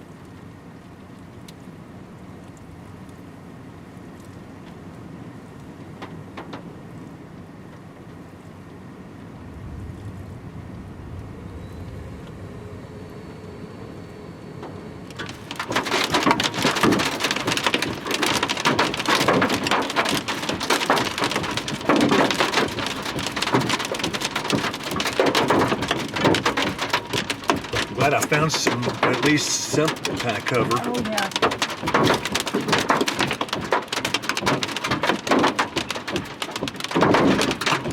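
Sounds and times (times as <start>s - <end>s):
low hum: 9.0s - 15.2s
hail and rain hammering on metal: 15.1s - 37.9s.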